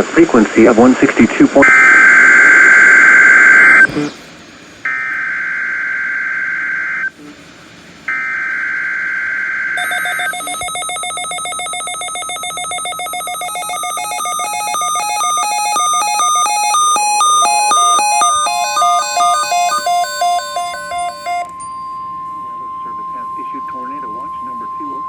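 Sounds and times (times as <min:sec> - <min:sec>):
harsh digital warbling tones: 0:09.8 - 0:21.5
stepping electronic tones: 0:09.8 - 0:21.6.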